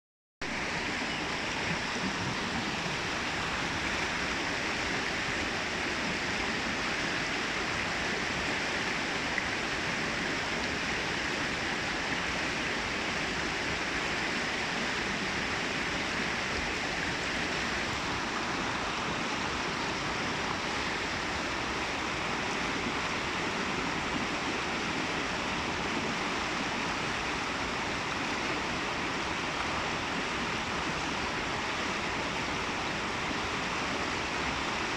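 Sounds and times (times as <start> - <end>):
brook water rushing: 0.4 - 34.9.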